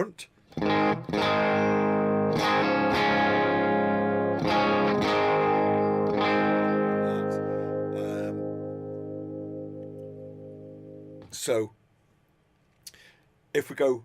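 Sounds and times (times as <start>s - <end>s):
electric guitar chords strummed: 0.5s - 11.4s.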